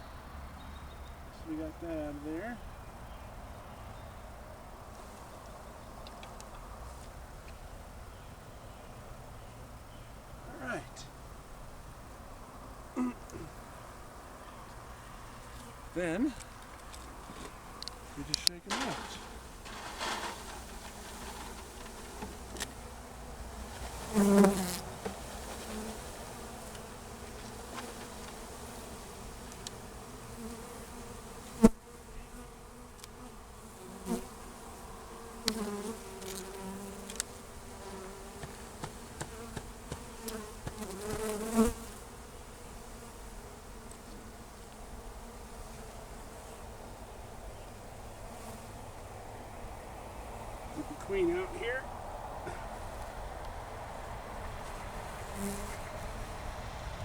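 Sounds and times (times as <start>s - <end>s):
bees buzzing: 16.8s - 56.8s.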